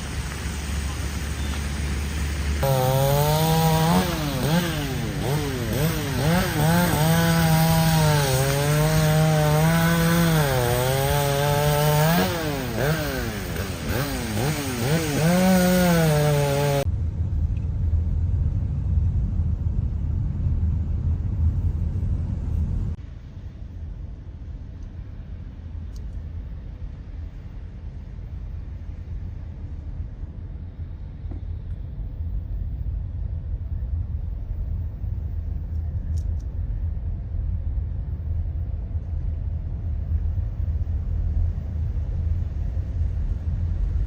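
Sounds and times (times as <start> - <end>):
low steady rumble: 0.0 - 44.0
chainsaw cutting wood: 2.6 - 16.9.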